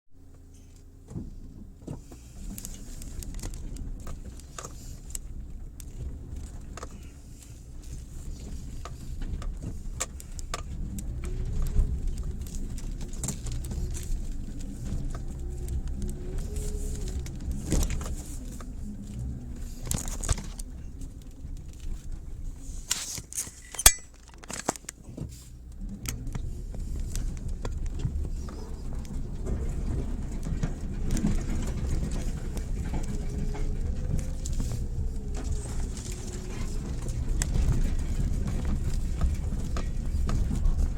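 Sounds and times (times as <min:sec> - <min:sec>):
engine and road rumble: 0:00.1 - 0:40.9
body and loose items rattling: 0:01.0 - 0:40.9.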